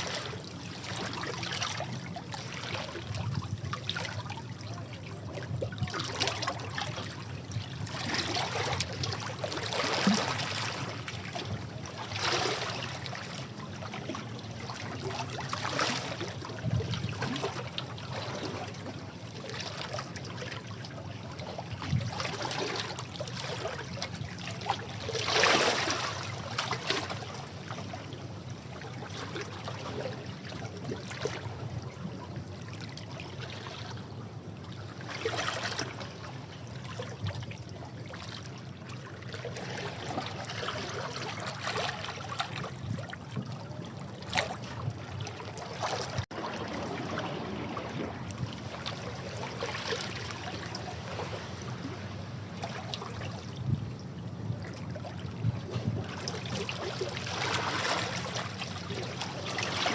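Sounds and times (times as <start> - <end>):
sea waves washing over rocks: 44.5 - 53.8, 55.4 - 59.9.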